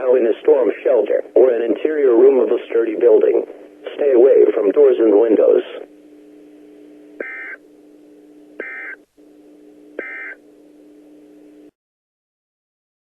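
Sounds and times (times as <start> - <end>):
steady low hum: 0.0 - 11.8
digital data screech bursts: 10.0 - 10.4.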